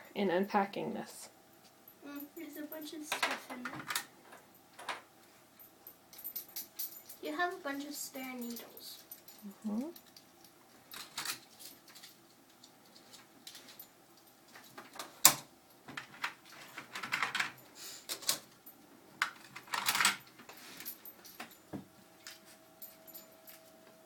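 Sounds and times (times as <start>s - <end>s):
small metal parts clicking and rattling: 1.6s - 24.0s.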